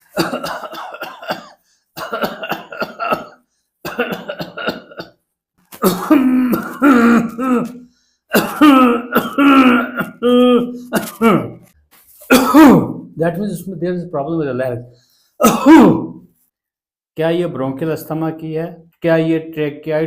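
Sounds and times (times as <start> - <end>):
person coughing: 0.0 - 13.0, 15.4 - 16.2.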